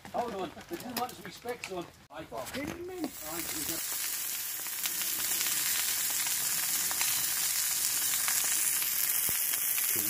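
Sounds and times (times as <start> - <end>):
rain hissing: 2.8 - 10.0.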